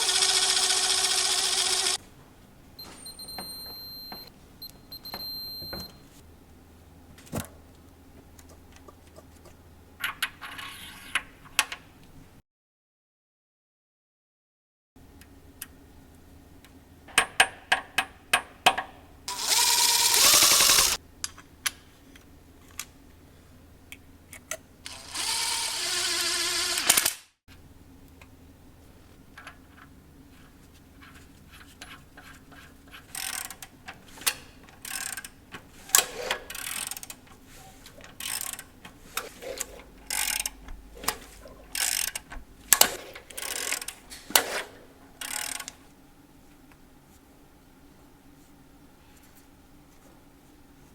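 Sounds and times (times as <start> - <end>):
power tool bursts: 0.0 - 2.0, 19.3 - 21.0, 24.9 - 27.3.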